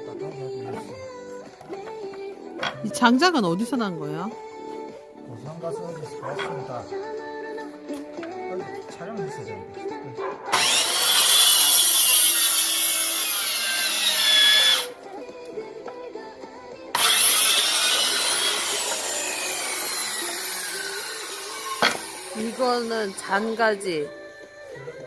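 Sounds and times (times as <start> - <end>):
power saw cutting wood: 10.5 - 15.0, 16.9 - 24.2.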